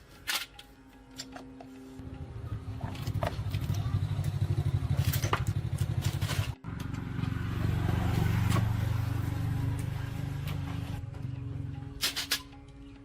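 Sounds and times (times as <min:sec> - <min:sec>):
motorcycle engine idling: 0:02.0 - 0:07.7.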